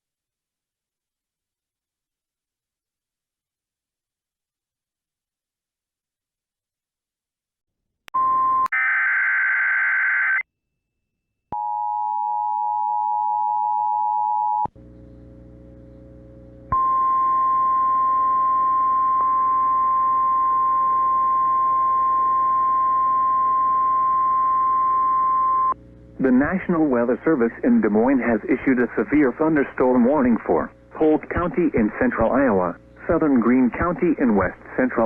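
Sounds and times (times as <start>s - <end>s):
radio static with low hum: 19.1s - 35.0s.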